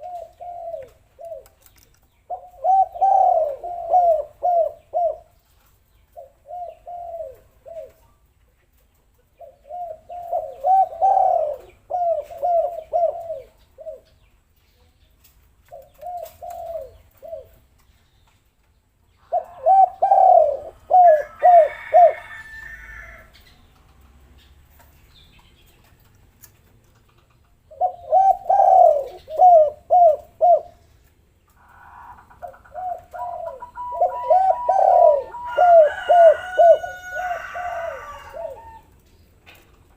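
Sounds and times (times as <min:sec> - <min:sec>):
dove cooing: 0:00.0 - 0:05.4, 0:06.1 - 0:08.1, 0:09.4 - 0:14.2, 0:15.7 - 0:17.7, 0:19.2 - 0:23.3, 0:27.7 - 0:31.0, 0:31.6 - 0:39.0
bird chirping: 0:00.0 - 0:21.4, 0:23.1 - 0:37.1.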